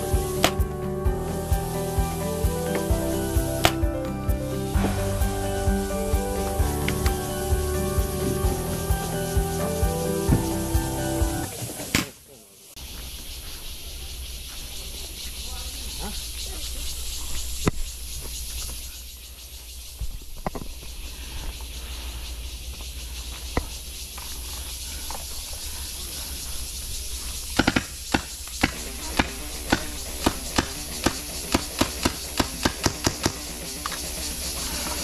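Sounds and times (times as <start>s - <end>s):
steady hiss: 0.0s - 35.0s
toy blaster pops: 27.6s - 34.0s.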